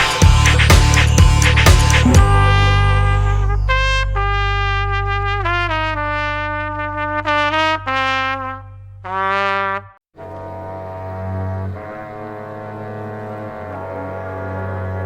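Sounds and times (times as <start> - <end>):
melody of held notes: 2.0 - 3.3
sustained low bass note: 2.0 - 3.7.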